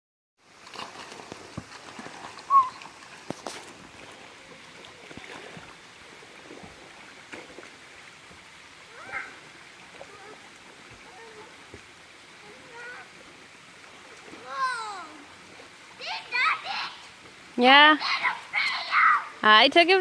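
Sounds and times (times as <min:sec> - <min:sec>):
waterfall rushing: 0:08.2 - 0:13.2, 0:14.4 - 0:19.5.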